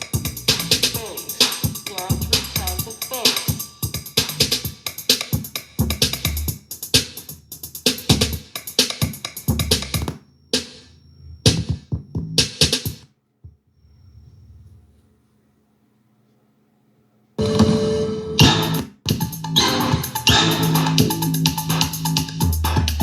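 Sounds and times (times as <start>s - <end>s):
electronic music with heavy bass: 0.0s - 3.5s, 4.2s - 4.7s, 18.4s - 23.0s.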